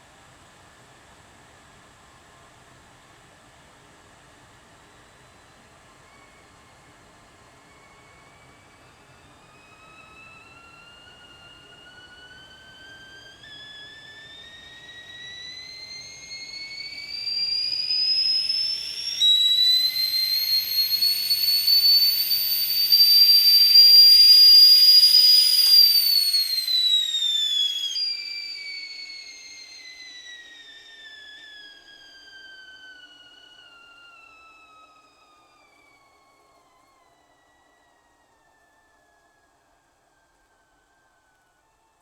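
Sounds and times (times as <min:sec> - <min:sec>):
kettle whistling: 0:04.8 - 0:37.1.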